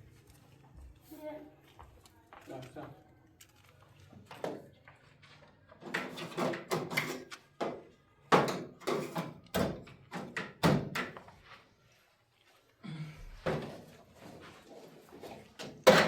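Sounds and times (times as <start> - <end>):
knocks and thuds in a room: 7.6 - 11.2.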